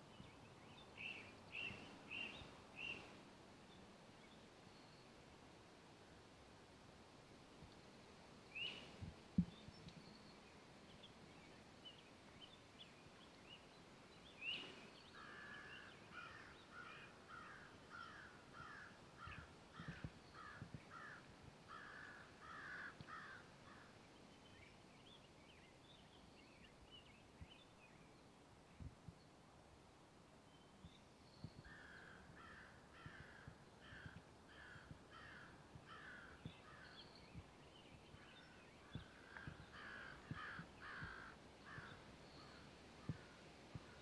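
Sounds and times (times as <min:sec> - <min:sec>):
small birds chirping: 0:00.1 - 0:05.2, 0:30.5 - 0:44.0
crow cawing: 0:15.2 - 0:23.9, 0:31.7 - 0:36.9, 0:39.2 - 0:42.0.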